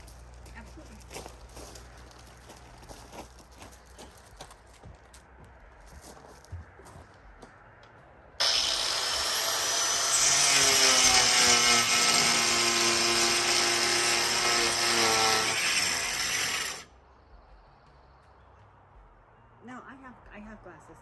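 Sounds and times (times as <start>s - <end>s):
angle grinder cutting board: 8.4s - 16.9s.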